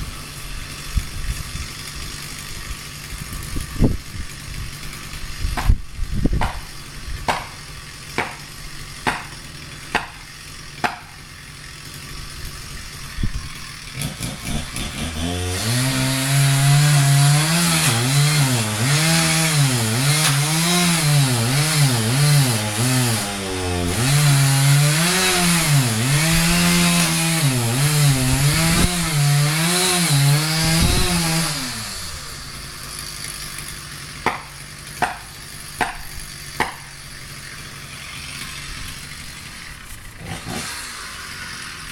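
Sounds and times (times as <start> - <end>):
chainsaw cutting wood: 0.0 - 41.9
sharp knocks: 5.6 - 6.7, 7.3 - 7.6, 8.2 - 8.4, 9.0 - 10.2, 10.8 - 11.1, 34.2 - 36.9.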